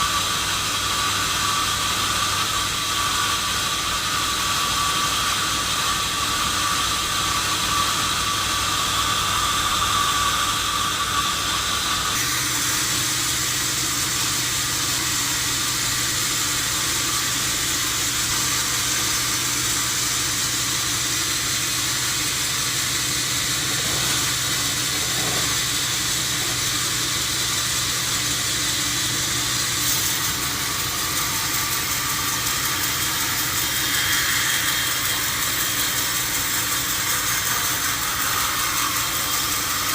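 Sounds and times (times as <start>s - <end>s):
sawmill saw running: 0.0s - 39.9s.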